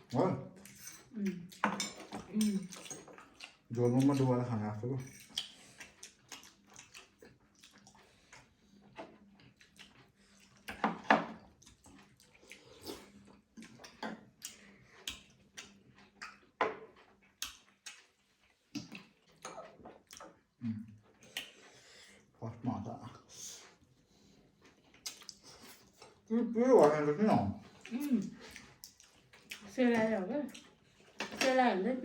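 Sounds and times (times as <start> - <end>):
wet chewing: 0.6 - 21.9, 23.2 - 31.7
lip smacks: 25.0 - 25.5.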